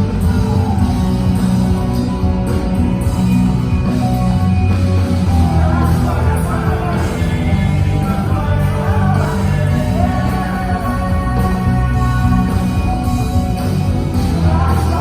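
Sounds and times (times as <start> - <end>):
rock band music: 0.0 - 15.0
person singing: 5.3 - 15.0.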